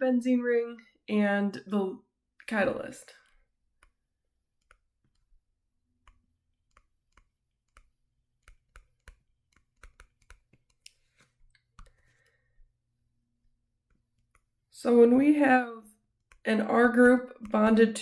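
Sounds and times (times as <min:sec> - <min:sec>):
small clicks and taps: 0:04.6 - 0:05.4, 0:06.0 - 0:12.3, 0:16.2 - 0:17.9.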